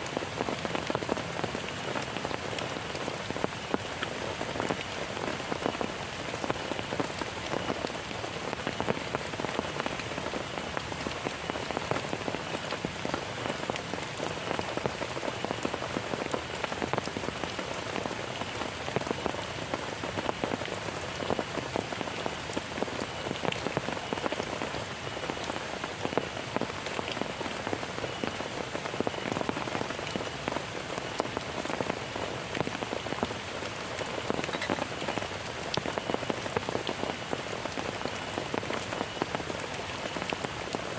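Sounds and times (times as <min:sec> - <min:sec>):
heavy rain falling: 0:00.0 - 0:40.9
raindrops striking close by: 0:00.0 - 0:40.9.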